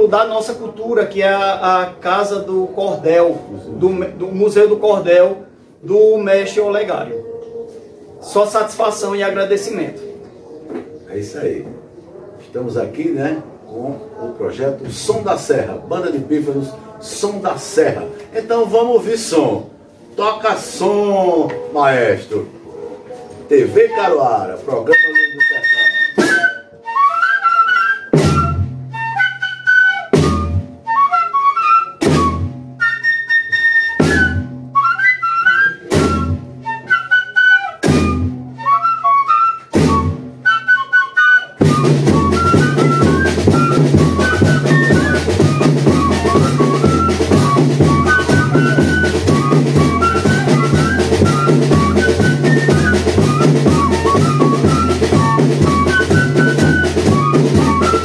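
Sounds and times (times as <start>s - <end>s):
fifes playing melody: 41.5s - 58.0s.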